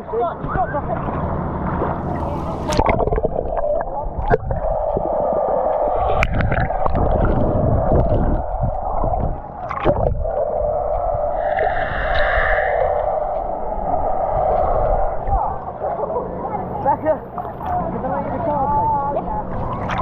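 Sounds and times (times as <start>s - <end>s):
muffled rushing gurgling water: 0.0s - 20.0s.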